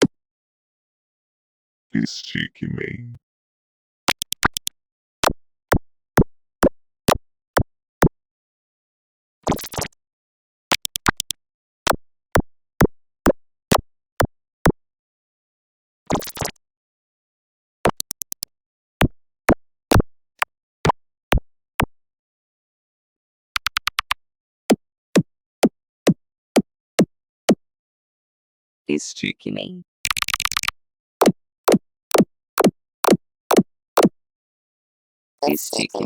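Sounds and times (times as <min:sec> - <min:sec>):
short sharp synthetic clicks: 0:30.1 - 0:30.7.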